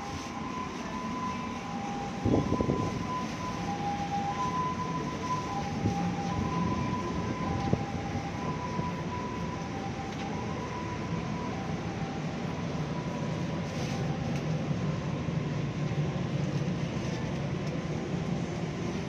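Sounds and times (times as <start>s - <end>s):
two-tone warning signal: 0.0s - 14.8s
electric train rumbling: 0.0s - 19.0s.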